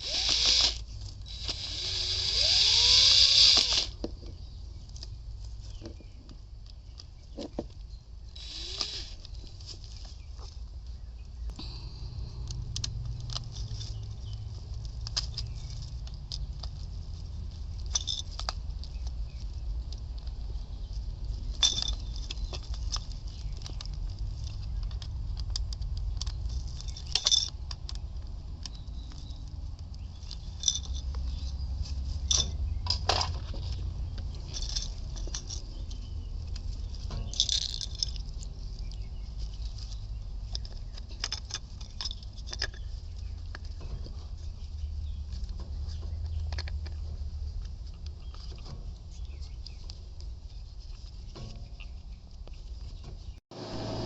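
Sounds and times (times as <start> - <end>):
hand tools clicking and rattling: 0.0 - 4.2, 8.4 - 9.6, 12.4 - 20.7, 21.3 - 50.3
steady low rumble: 9.3 - 41.1.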